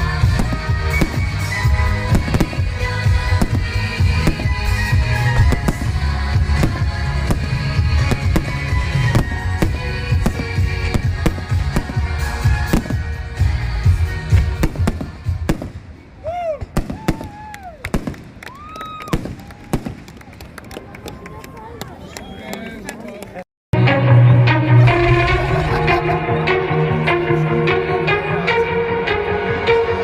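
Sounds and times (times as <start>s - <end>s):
music: 0.0s - 15.6s, 23.8s - 30.0s
fireworks bangs and crackles: 0.0s - 21.2s
fireworks whistles: 0.4s - 6.0s.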